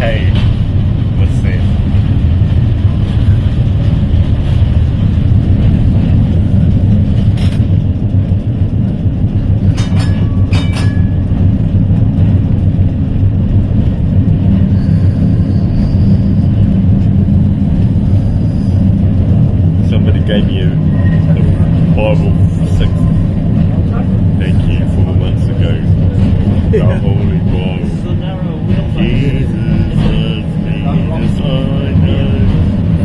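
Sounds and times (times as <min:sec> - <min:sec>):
tram wheels rumbling on rails: 0:00.0 - 0:33.0.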